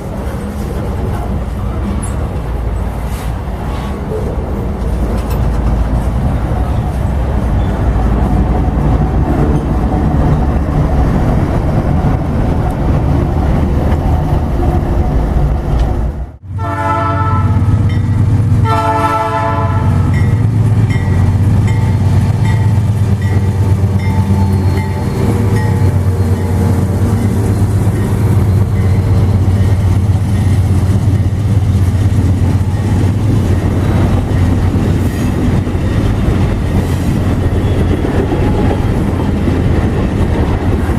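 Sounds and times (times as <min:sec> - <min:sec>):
freight train rumbling: 0:00.0 - 0:40.9
locomotive engine drone: 0:00.0 - 0:40.9
locomotive air horn blasts: 0:16.6 - 0:17.8, 0:18.6 - 0:20.1.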